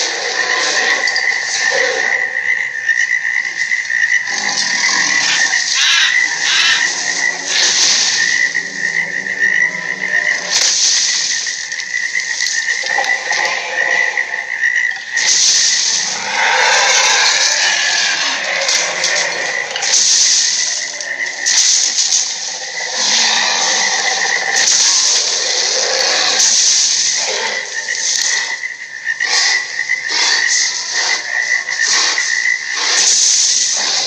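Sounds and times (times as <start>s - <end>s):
giant ape calls: 4.2s - 28.6s.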